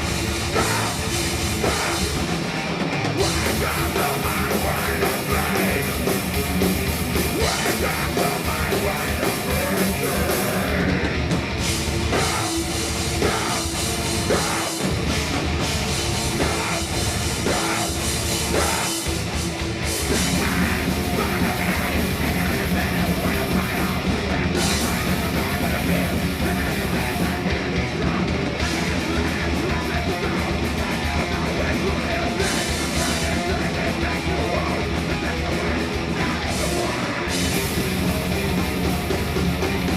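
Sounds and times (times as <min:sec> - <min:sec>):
bass guitar: 0:00.0 - 0:39.9
distorted electric guitars: 0:00.0 - 0:39.9
drum kit: 0:00.0 - 0:39.9
shouted vocals: 0:03.3 - 0:06.2, 0:07.4 - 0:11.2.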